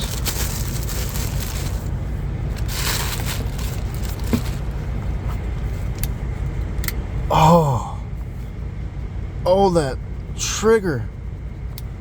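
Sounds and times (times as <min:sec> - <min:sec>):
packaging crinkling: 0:00.0 - 0:01.9, 0:02.6 - 0:04.8
steady low rumble: 0:00.0 - 0:12.0.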